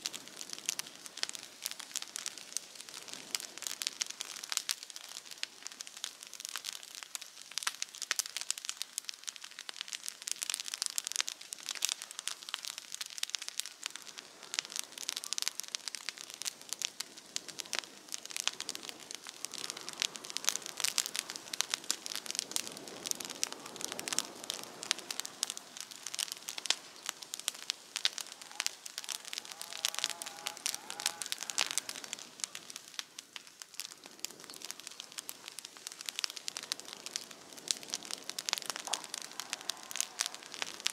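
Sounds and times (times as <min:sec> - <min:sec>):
campfire crackling and popping: 0:00.0 - 0:40.9.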